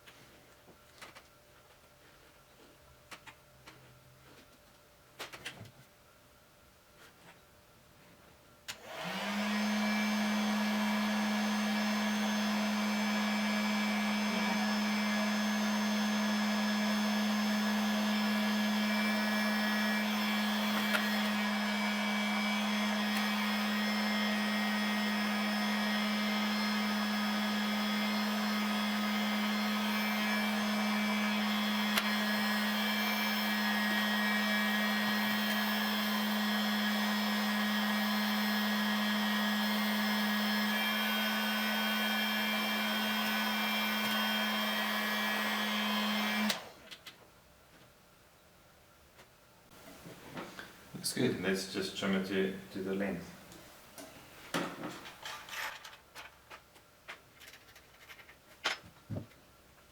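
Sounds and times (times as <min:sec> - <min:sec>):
heat gun fan humming: 0:08.7 - 0:47.0.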